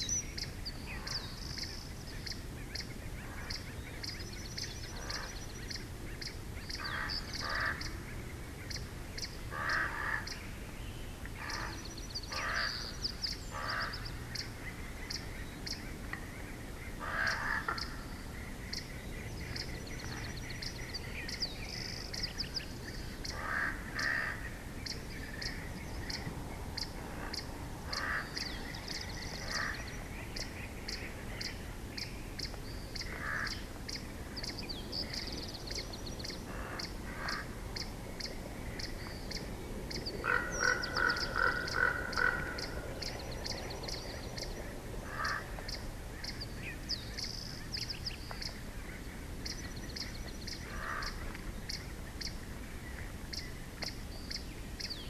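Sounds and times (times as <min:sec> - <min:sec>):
low bird calls: 0:00.0 - 0:55.0
high bird trills: 0:40.2 - 0:44.5.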